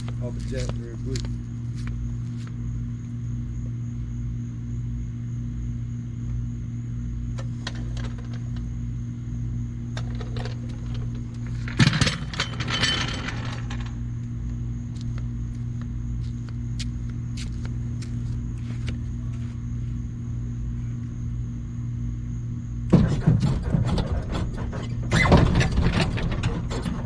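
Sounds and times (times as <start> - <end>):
steady low hum: 0.0 - 27.0
metal clanking and rattling: 10.0 - 14.0, 22.9 - 27.0.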